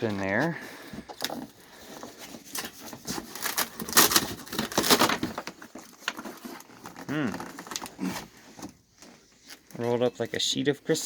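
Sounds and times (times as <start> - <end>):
plastic packaging crinkling: 0.0 - 10.4.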